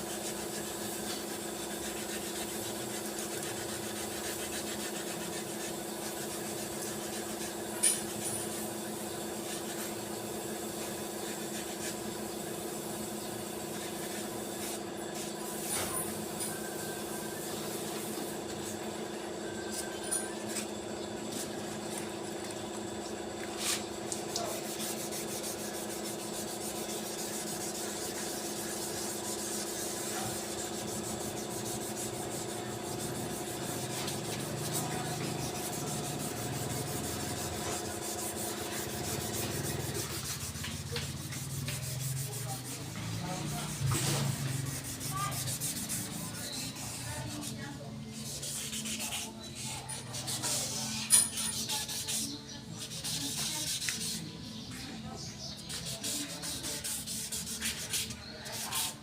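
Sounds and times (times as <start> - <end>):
sanding scrape on car bumper: 0.0 - 18.9, 23.6 - 54.4, 55.1 - 59.0.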